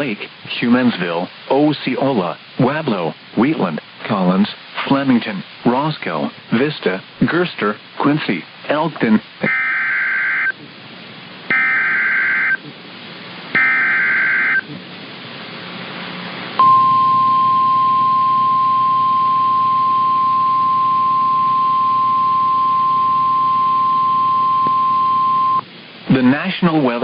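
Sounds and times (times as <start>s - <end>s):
static hiss: 0.0s - 27.0s
steady high warning tone: 9.4s - 10.6s, 11.5s - 12.7s, 13.5s - 14.7s, 16.6s - 25.6s.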